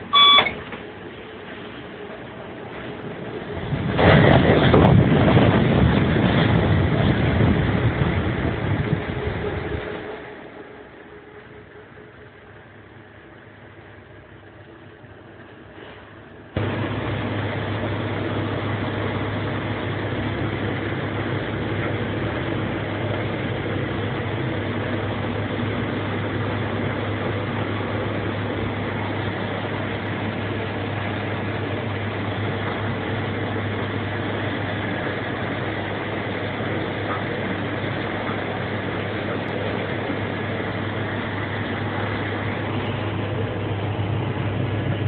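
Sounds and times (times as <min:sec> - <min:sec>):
train running with rushing noise: 0:00.0 - 0:45.0
low hum: 0:16.6 - 0:45.0.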